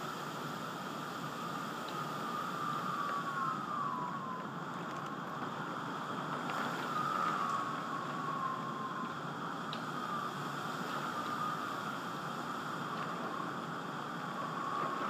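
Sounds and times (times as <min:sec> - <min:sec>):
steady hiss: 0:00.0 - 0:15.0
distant siren wailing: 0:00.6 - 0:15.0.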